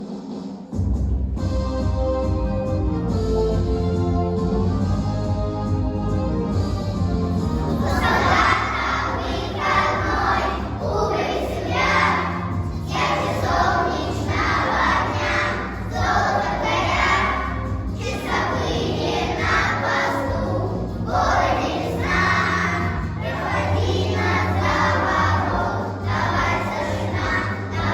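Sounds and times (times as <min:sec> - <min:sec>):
backing music: 0:00.0 - 0:27.9
children chanting in chorus: 0:07.8 - 0:27.9.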